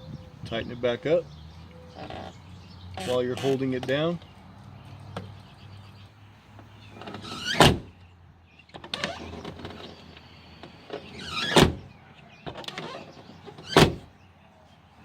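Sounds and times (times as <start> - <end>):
car door slamming: 7.3 - 7.9, 11.2 - 11.9, 13.6 - 14.1.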